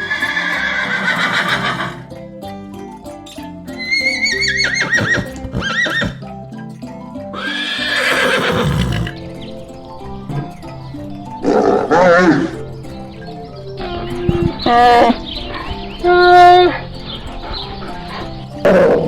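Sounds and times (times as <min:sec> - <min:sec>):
horse whinnying: 0:00.0 - 0:02.1, 0:03.8 - 0:06.3, 0:07.3 - 0:09.3
background music: 0:00.0 - 0:19.0.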